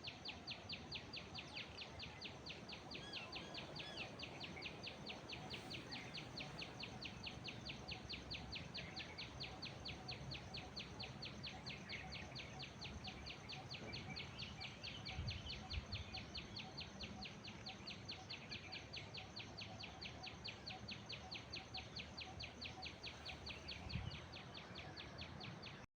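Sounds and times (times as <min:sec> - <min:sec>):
faint bird calls: 0:02.7 - 0:17.7.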